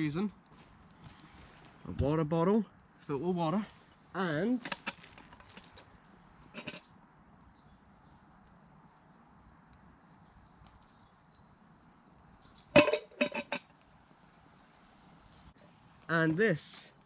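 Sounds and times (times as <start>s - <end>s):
faint high bird chirps: 5.5s - 14.0s.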